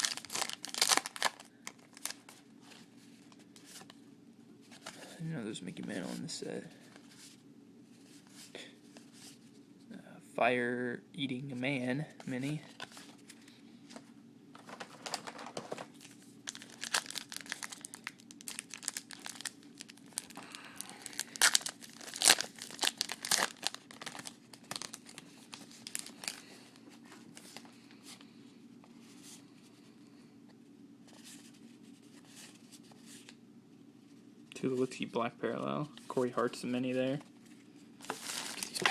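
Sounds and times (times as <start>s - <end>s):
card pack wrappers tearing: 0.0s - 2.3s, 16.5s - 26.5s, 38.0s - 38.9s.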